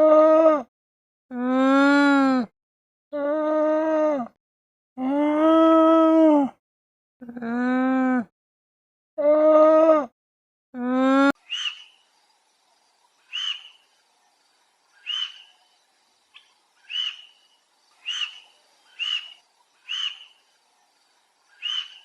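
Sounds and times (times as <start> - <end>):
animal chirping calls: 11.4 - 12.0, 13.1 - 14.0, 14.9 - 20.5, 21.4 - 22.0.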